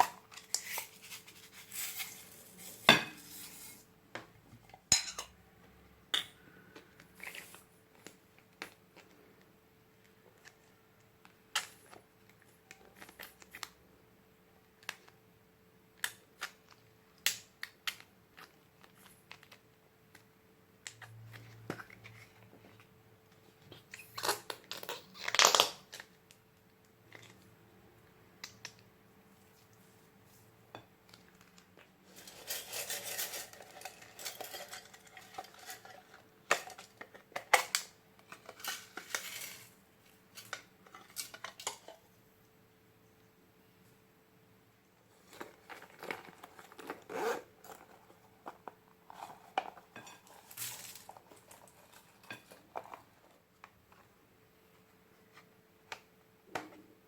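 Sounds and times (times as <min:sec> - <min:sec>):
crackly handling noise: 0:00.0 - 0:04.9, 0:15.9 - 0:27.6, 0:28.4 - 0:42.2, 0:44.9 - 0:57.0.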